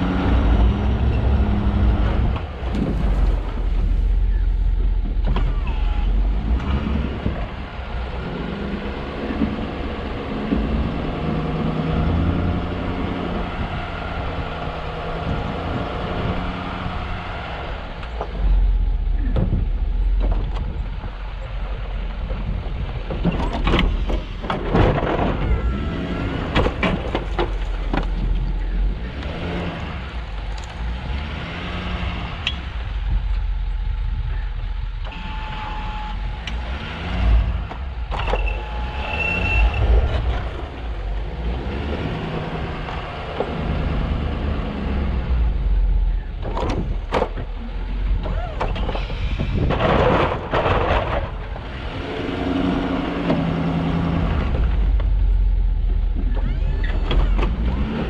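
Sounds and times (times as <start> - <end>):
truck engine running: 0.0 - 58.0
knocks and clatter: 18.0 - 29.4, 46.3 - 52.0.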